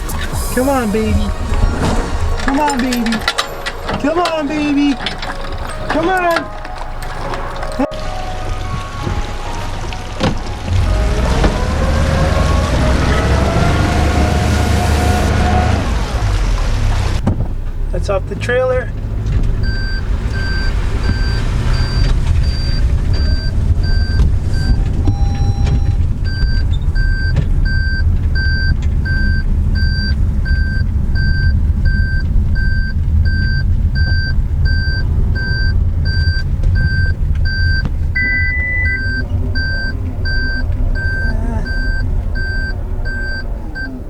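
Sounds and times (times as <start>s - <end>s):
low engine rumble: 0.0s - 44.0s
brief steady tone: 19.6s - 44.0s
reverse warning beeps: 19.6s - 44.0s.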